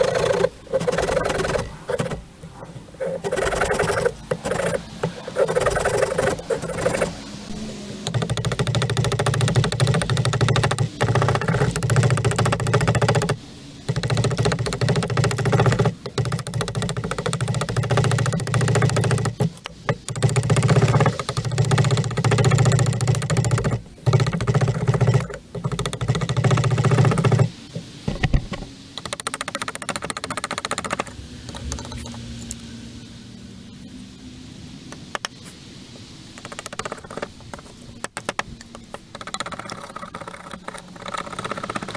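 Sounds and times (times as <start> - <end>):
small power tool cutting wood: 0.0 - 2.3, 3.0 - 27.5.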